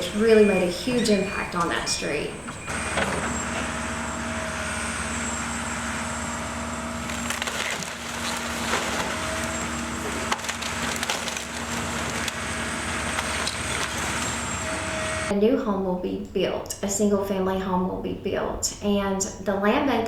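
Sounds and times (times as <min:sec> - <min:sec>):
heavy machinery engine hum: 0:00.0 - 0:15.4
timber cracking and splintering: 0:07.0 - 0:15.2.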